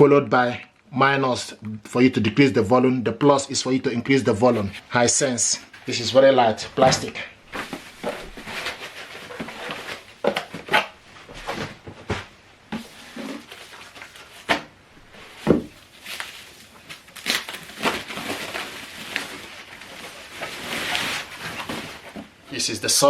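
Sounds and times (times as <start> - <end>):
packaging crinkling: 7.6 - 11.7, 12.8 - 22.4.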